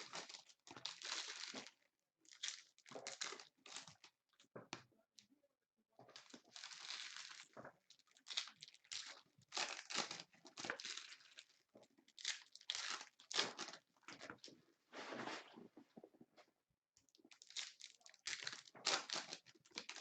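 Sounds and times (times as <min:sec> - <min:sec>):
wrappers tearing and crinkling: 0:00.0 - 0:04.0, 0:06.2 - 0:11.5, 0:12.1 - 0:14.5, 0:17.4 - 0:20.0.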